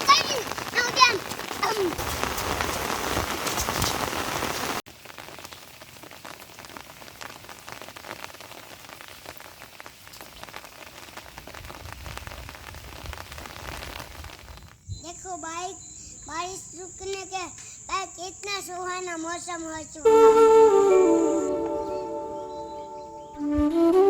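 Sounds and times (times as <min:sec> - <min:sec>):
heavy rain falling: 0:00.0 - 0:14.6
raindrops striking: 0:00.0 - 0:14.8.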